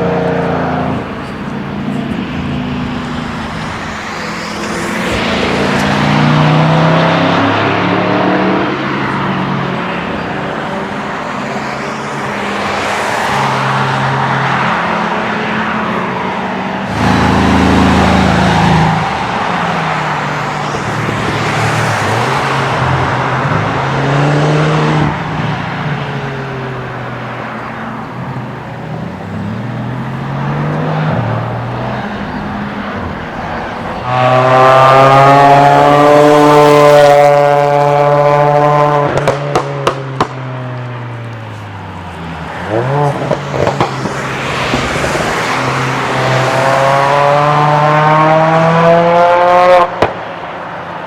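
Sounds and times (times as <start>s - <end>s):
sports cars passing: 0.0s - 51.0s
exhaust pops and crackles: 39.1s - 40.4s.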